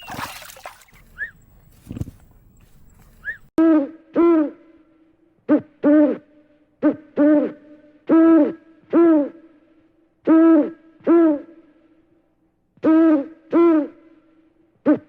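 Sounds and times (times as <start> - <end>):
bird calling: 0.0 - 1.9, 2.6 - 3.6.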